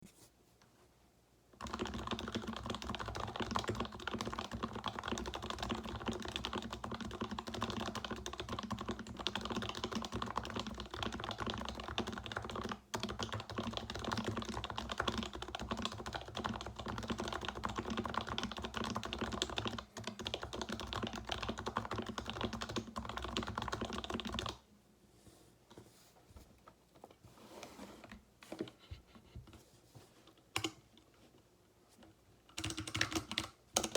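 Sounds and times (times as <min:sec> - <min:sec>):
fast keyboard typing: 0:01.6 - 0:24.6, 0:32.5 - 0:33.9.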